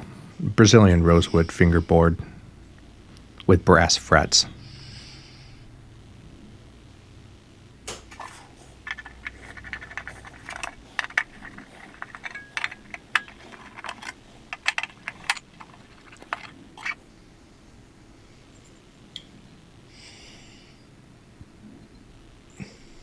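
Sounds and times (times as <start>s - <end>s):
metal hardware clicks and clinks: 8.2s - 17.0s.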